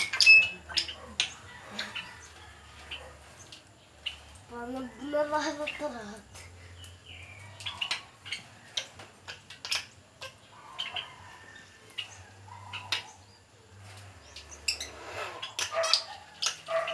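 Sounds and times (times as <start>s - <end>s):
bird chirps and calls: 0.0s - 16.9s
bird sharp clicks: 15.4s - 16.9s.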